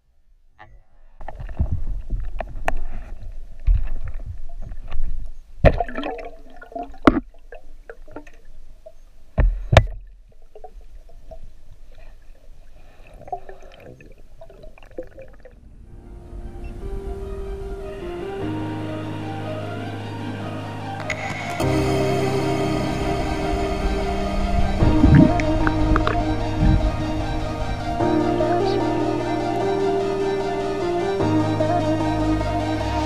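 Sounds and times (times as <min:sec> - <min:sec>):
underwater gurgling: 0:03.5 - 0:15.8, 0:23.1 - 0:28.1.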